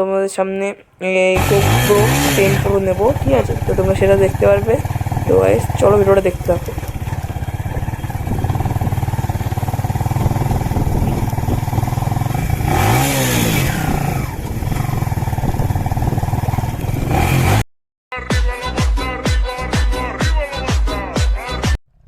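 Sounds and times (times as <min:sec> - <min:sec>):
motorcycle engine idling and revving: 0:01.4 - 0:17.7.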